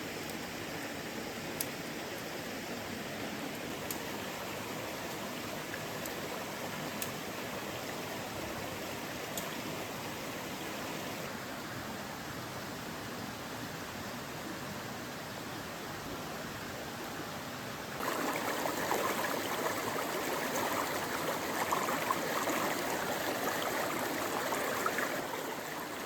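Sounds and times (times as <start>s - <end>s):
mountain stream rushing: 0.0s - 26.0s
faint sharp ticks: 3.5s - 4.1s, 7.0s - 7.2s, 9.3s - 9.6s.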